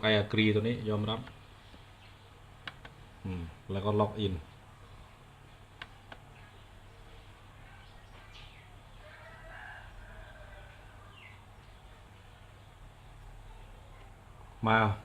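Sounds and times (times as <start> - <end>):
steady low hum: 0.0 - 15.0
mouse clicks: 2.6 - 3.0, 5.8 - 6.3.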